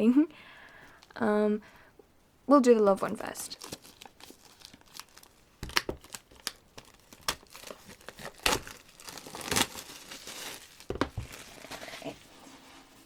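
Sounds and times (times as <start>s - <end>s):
plastic shrink wrap crinkling: 3.2s - 12.3s.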